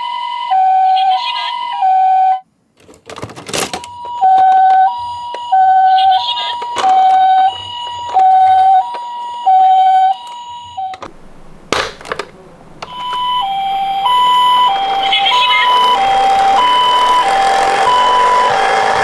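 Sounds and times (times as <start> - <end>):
two-tone ambulance siren: 3.9 - 19.0.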